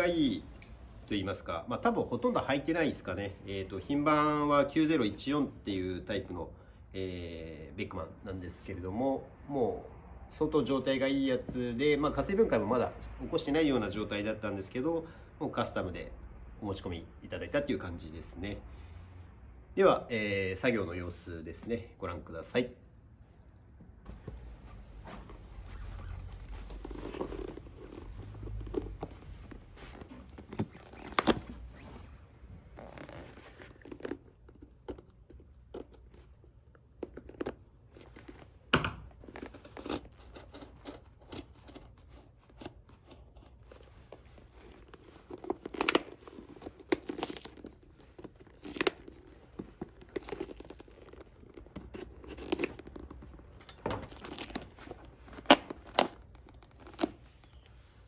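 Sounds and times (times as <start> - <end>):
tools scraping and tearing leather: 25.0 - 57.8.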